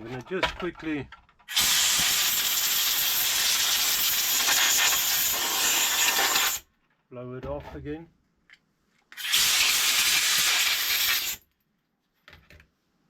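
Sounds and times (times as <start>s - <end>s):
compressed air blast hissing: 1.5s - 6.6s, 9.2s - 11.4s.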